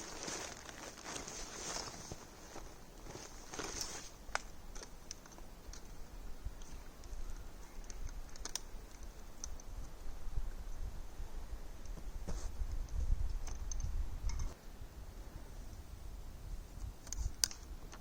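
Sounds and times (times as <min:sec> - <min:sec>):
footstep crunching in snow: 0:00.0 - 0:04.4
small sharp clicks: 0:06.6 - 0:09.9, 0:12.7 - 0:14.6, 0:16.8 - 0:18.0.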